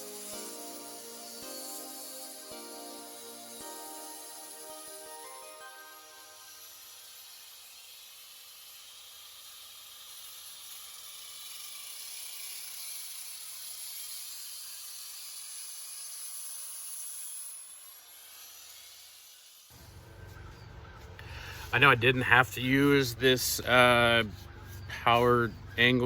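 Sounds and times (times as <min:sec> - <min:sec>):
angle grinder cutting metal: 0:00.0 - 0:19.8.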